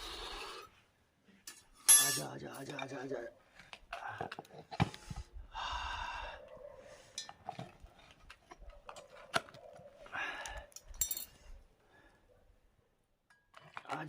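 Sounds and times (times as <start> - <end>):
metal pot and utensils clinking: 1.5 - 3.1, 7.1 - 7.7, 11.0 - 11.4.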